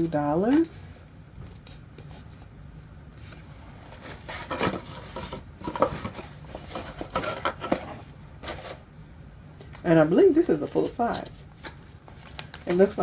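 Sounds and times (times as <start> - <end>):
box and container handled: 3.3 - 8.8.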